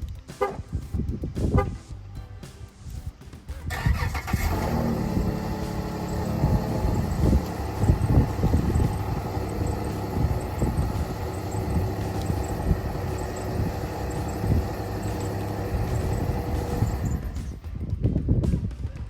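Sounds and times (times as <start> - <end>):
wind rumbling on microphone: 0.0 - 2.0, 2.8 - 19.0
car engine running: 3.7 - 17.6.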